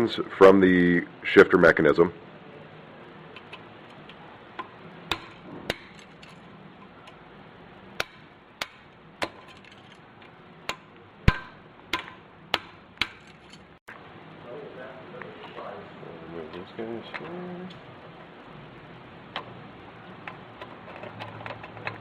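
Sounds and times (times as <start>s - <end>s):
hammer striking metal punch: 4.6s - 6.2s, 8.0s - 9.7s, 10.6s - 13.6s.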